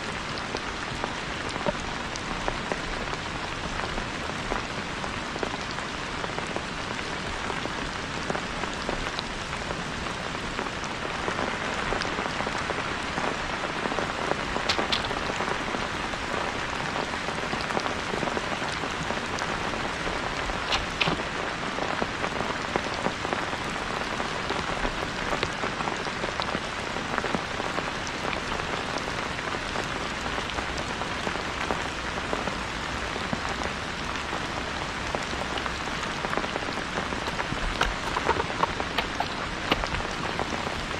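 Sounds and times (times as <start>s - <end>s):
steady rain falling: 0.0s - 40.9s
sharp drip taps: 37.3s - 40.5s.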